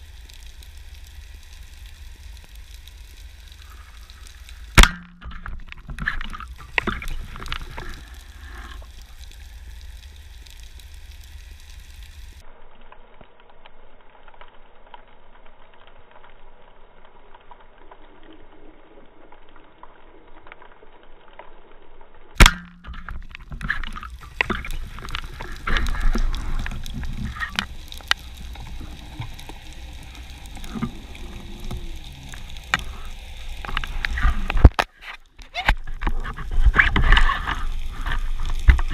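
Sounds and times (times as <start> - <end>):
sharp crack: 0.0 - 12.4, 22.4 - 38.9
small clicks underwater: 0.0 - 38.9
water gurgling underwater: 4.6 - 10.0, 22.4 - 38.9.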